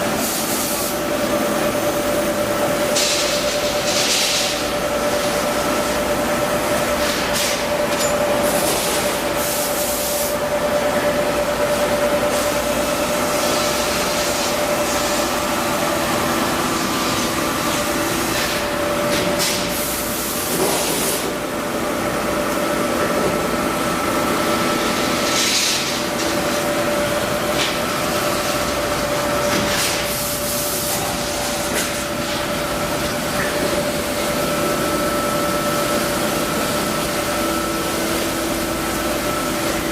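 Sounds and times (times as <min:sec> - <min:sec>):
laser cutter machine hum: 0:00.0 - 0:39.9.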